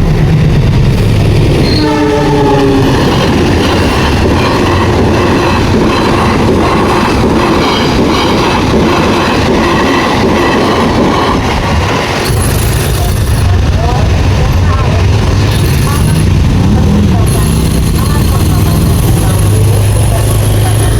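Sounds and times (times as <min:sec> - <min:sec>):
locomotive horn blast: 0:01.5 - 0:03.3.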